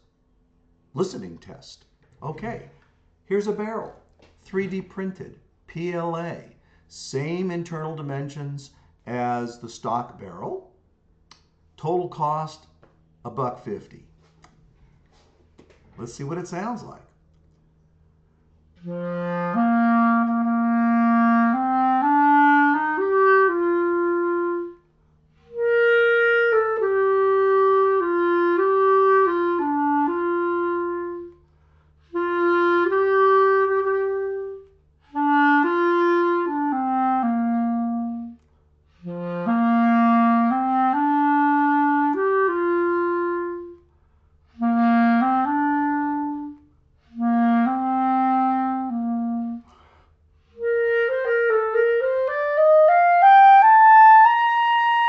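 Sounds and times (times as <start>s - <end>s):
clarinet playing a melody: 18.8s - 43.9s, 44.5s - 55.0s.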